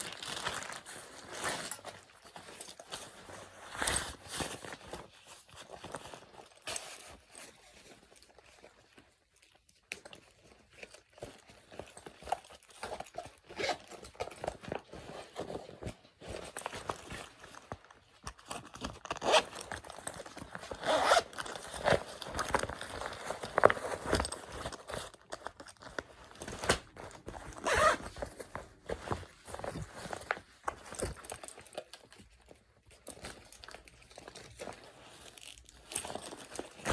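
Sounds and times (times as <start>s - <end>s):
backpack zippers pulled: 13.5s - 13.9s, 19.2s - 19.7s, 20.7s - 21.5s, 27.5s - 28.2s.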